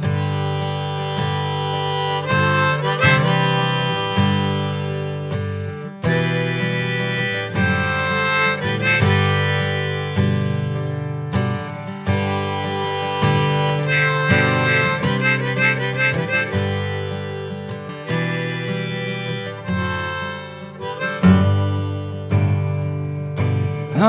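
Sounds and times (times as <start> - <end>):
acoustic guitar: 0.0 - 24.0
blues harmonica melody: 0.0 - 24.0.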